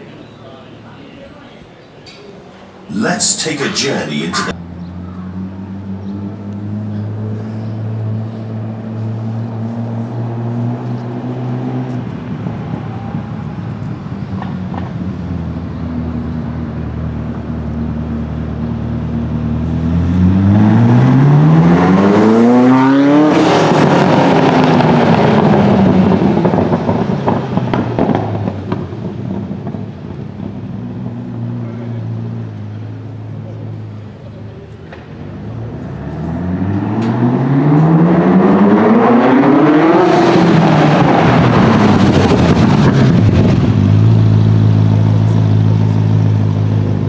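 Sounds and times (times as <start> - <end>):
car accelerating and passing: 4.6 - 13.7, 14.9 - 29.8, 35.2 - 47.0.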